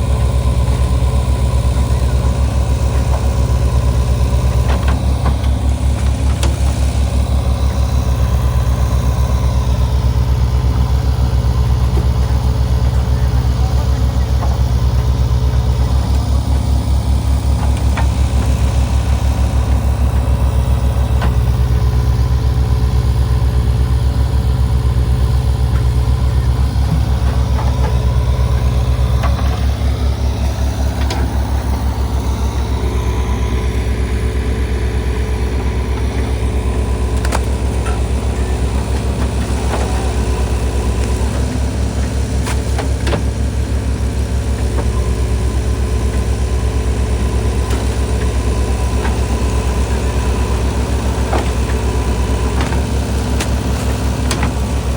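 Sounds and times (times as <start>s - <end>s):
diesel engine droning: 0.0s - 54.9s.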